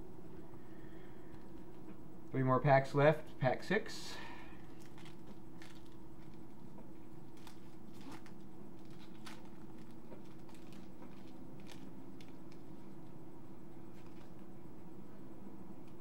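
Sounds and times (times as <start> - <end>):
steady low hum: 0.0 - 16.0
foil card pack crinkling: 4.6 - 13.2, 13.9 - 14.5.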